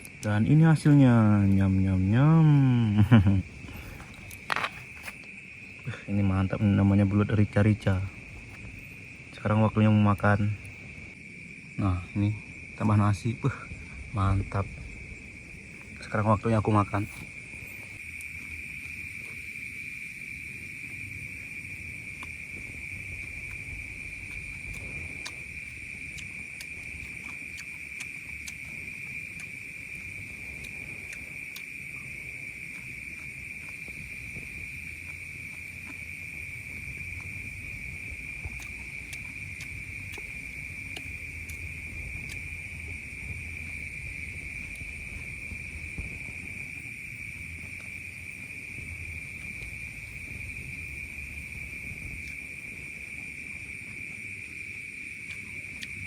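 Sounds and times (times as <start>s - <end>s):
crickets chirring: 0.0s - 56.0s
low rumble: 36.4s - 53.8s.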